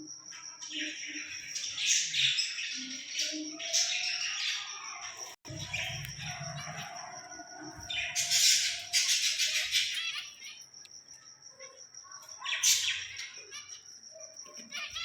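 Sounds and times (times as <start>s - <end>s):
thin steady high tone: 0.0s - 15.0s
parrot chirping and squawking: 7.8s - 10.6s, 12.4s - 15.0s.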